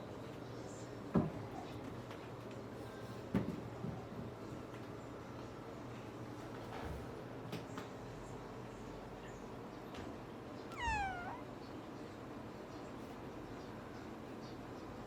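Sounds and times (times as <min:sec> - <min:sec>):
kitten meowing: 0:10.7 - 0:11.5.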